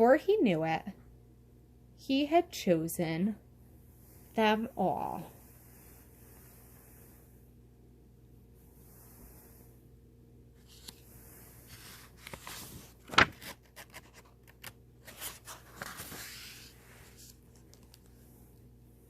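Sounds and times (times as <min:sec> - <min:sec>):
book pages turning: 0:10.6 - 0:18.2
paper rustling: 0:10.6 - 0:18.2.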